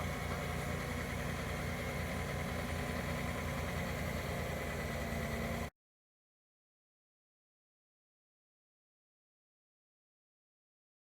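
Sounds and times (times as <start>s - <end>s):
heavy machine engine idling: 0.0s - 5.7s.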